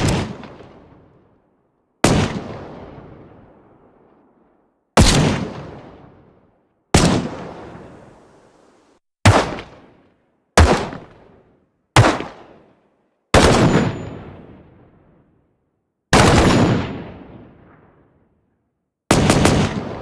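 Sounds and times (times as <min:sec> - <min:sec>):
rifle firing single shots: 0:00.0 - 0:01.2, 0:02.0 - 0:03.4, 0:05.0 - 0:06.1, 0:06.9 - 0:07.9, 0:09.2 - 0:10.0, 0:10.6 - 0:11.4, 0:12.0 - 0:14.6, 0:16.1 - 0:17.8, 0:19.1 - 0:20.0.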